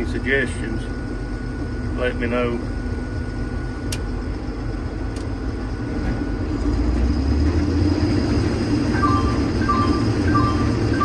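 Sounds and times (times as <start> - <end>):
combine harvester running: 0.0 - 11.0
two-tone electronic beep: 8.9 - 11.0.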